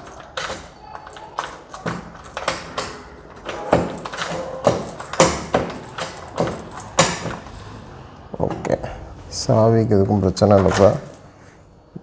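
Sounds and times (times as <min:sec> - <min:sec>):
key clicking in door lock: 0:00.0 - 0:07.8
keys jingling: 0:00.0 - 0:08.2, 0:10.6 - 0:12.0.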